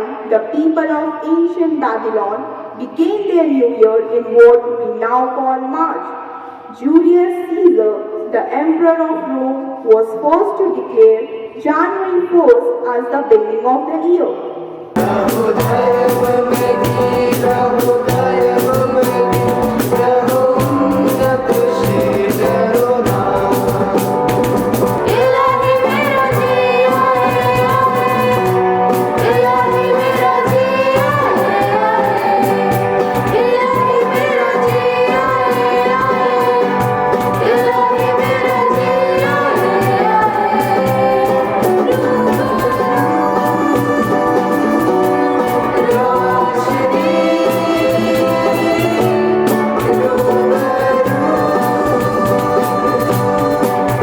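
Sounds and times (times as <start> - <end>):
choir singing: 15.0 - 54.0
instrumental accompaniment: 15.0 - 54.0.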